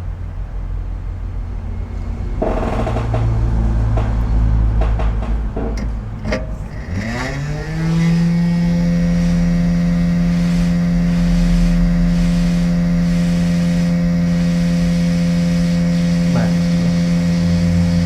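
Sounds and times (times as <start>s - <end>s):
small electric motor humming: 6.2s - 18.0s.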